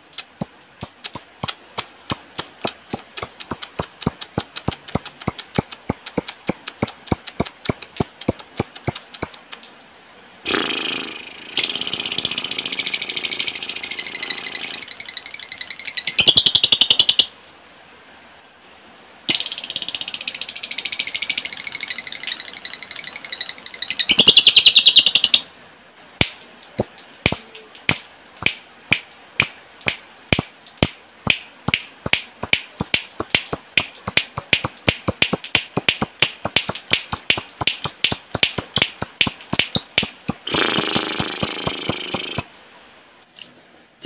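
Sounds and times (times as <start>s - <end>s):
lovebird chattering trill: 0.0s - 9.6s, 10.5s - 17.3s, 19.3s - 25.5s, 26.8s - 42.5s
lovebird sharp ticking clicks: 0.1s - 9.6s, 26.2s - 42.5s.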